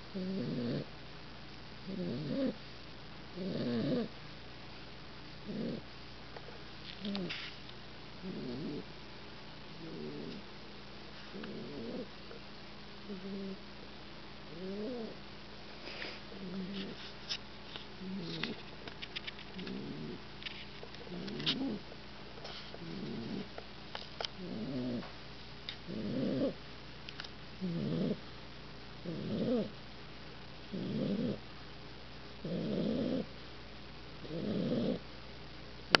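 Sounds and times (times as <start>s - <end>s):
puppy snoring: 0.1s - 0.9s, 1.8s - 2.6s, 3.3s - 4.1s, 5.4s - 5.9s, 8.2s - 8.9s, 9.7s - 10.4s, 11.3s - 12.1s, 13.0s - 13.6s, 14.5s - 15.2s, 15.8s - 17.1s, 18.0s - 18.6s, 19.6s - 20.2s, 21.0s - 21.8s, 22.5s - 23.6s, 24.2s - 25.1s, 25.8s - 26.6s, 27.6s - 28.3s, 29.0s - 29.8s, 30.7s - 31.4s, 32.4s - 33.3s, 34.2s - 35.1s.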